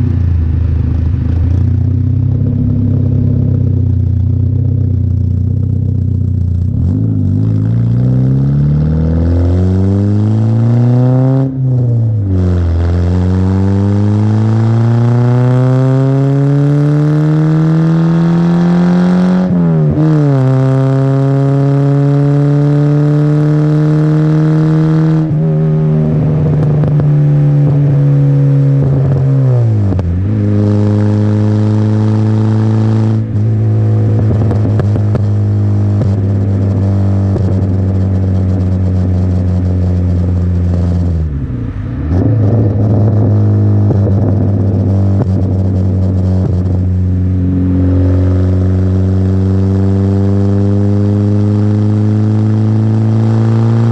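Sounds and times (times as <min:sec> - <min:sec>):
car engine revving through gears: 0:06.5 - 0:53.9
exhaust crackling pops: 0:26.4 - 0:28.0, 0:28.8 - 0:30.4, 0:33.1 - 0:47.4.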